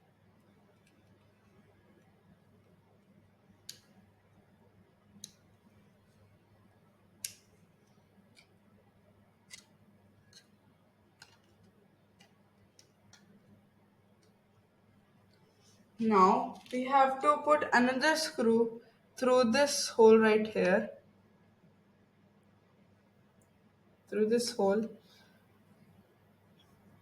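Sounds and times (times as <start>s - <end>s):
small parts clicking and tapping: 7.2s - 8.6s, 9.4s - 14.4s.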